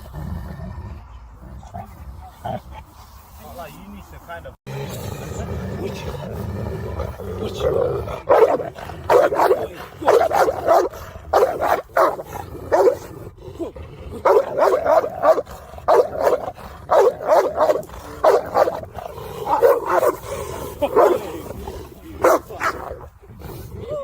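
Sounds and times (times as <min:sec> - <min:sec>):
dog barking: 0:08.2 - 0:13.0, 0:14.2 - 0:18.8, 0:19.5 - 0:20.2, 0:20.9 - 0:21.3, 0:22.2 - 0:23.0.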